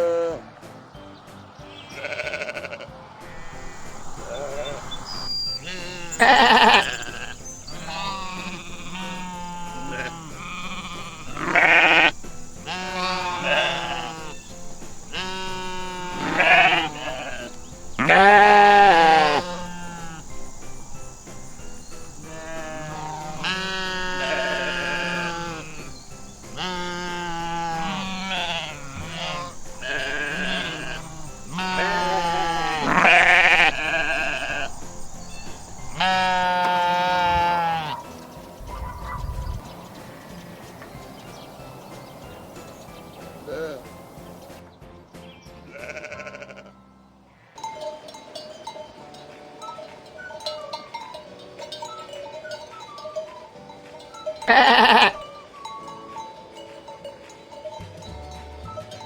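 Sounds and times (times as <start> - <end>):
sheep bleating: 0.0 - 0.5, 1.7 - 38.3, 43.5 - 44.0, 45.7 - 46.8, 54.5 - 55.2
background music: 0.0 - 59.0.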